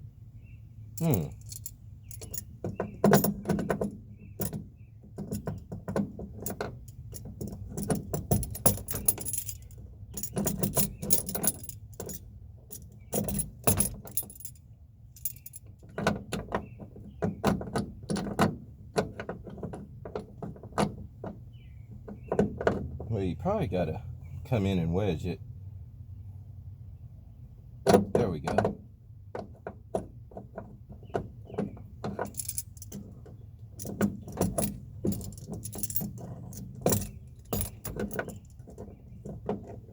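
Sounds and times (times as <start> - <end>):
metal hardware clinking and rattling: 1.0 - 14.6, 15.2 - 16.1, 32.0 - 39.9.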